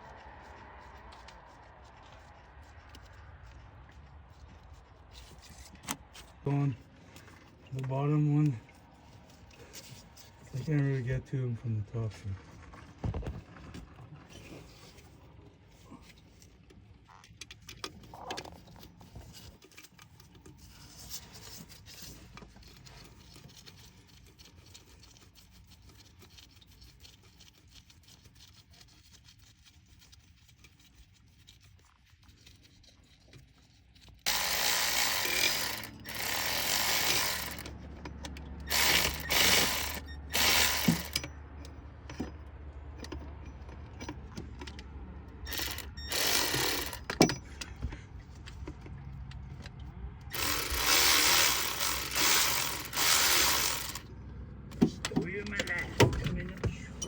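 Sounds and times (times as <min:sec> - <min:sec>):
socket ratchet clicking: 0:34.3 - 0:41.3, 0:45.5 - 0:47.2.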